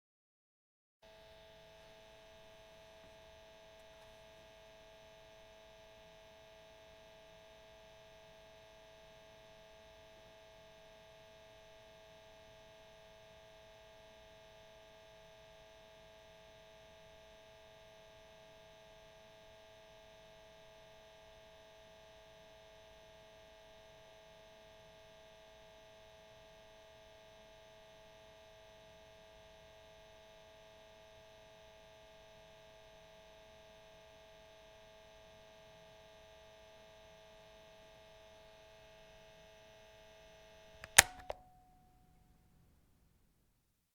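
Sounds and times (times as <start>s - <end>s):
cassette tape motor hum: 1.1s - 5.9s.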